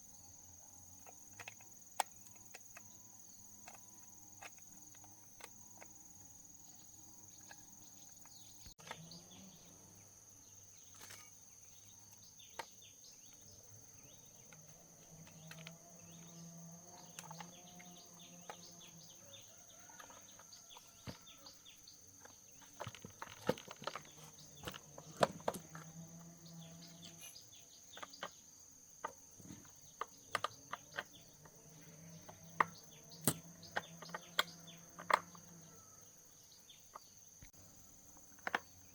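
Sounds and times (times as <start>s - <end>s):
high insect drone: 0.0s - 38.9s
hand tools clicking and knocking: 19.8s - 26.0s, 29.0s - 35.5s.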